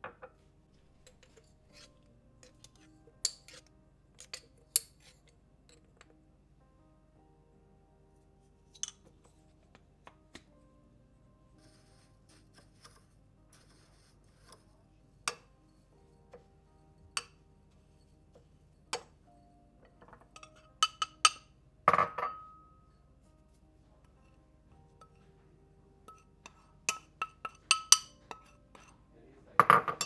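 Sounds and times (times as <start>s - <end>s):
soft background music: 0.0s - 30.0s
kitchenware clinking: 4.2s - 6.1s, 20.0s - 22.8s, 26.1s - 29.0s, 29.6s - 30.0s.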